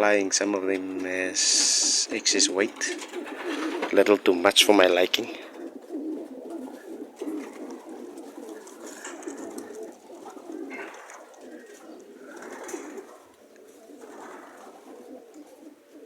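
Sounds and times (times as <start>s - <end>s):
pigeons cooing: 0.0s - 16.0s
faint clicks: 7.4s - 14.4s.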